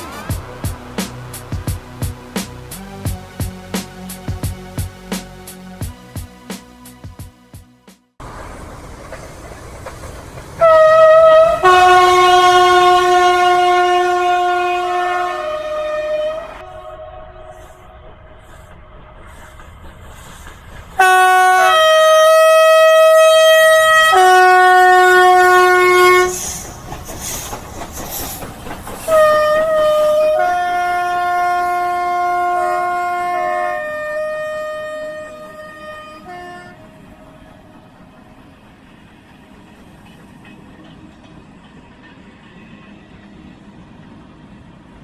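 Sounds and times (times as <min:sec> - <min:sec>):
noisy steam rush: 0:00.0 - 0:06.9, 0:08.2 - 0:45.0
steam locomotive whistle: 0:10.6 - 0:18.0, 0:21.0 - 0:27.5, 0:29.0 - 0:37.5.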